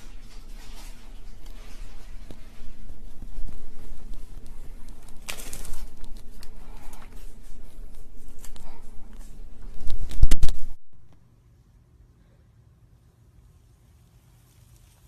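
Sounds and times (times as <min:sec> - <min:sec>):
small clicks and crackles: 0:03.5 - 0:07.2.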